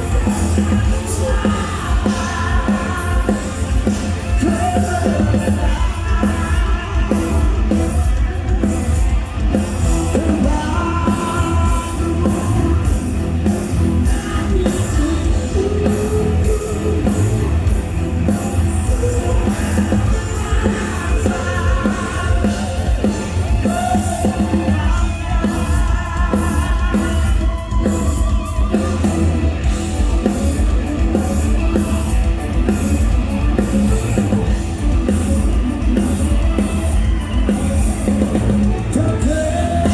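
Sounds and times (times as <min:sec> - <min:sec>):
person singing: 0:00.0 - 0:29.1, 0:38.1 - 0:39.9
rock band playing live: 0:00.0 - 0:39.9.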